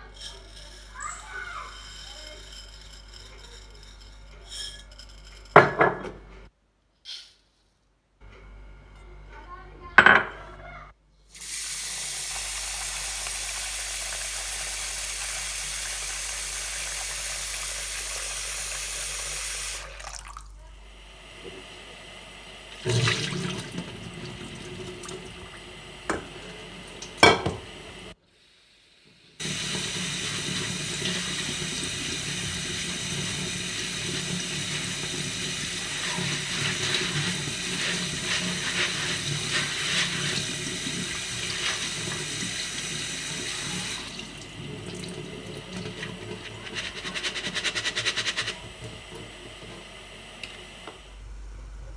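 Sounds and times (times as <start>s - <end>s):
tap running into sink: 22.8s - 27.7s.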